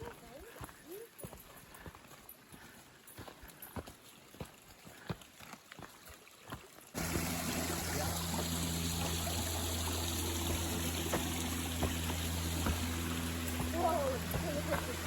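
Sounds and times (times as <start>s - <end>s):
flowing water rushing: 5.8s - 15.0s
low steady hum: 7.0s - 15.0s.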